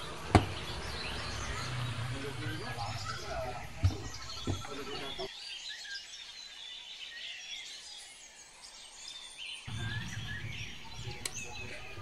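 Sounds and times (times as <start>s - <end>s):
small birds chirping: 0.0s - 12.0s
low hum: 9.7s - 12.0s.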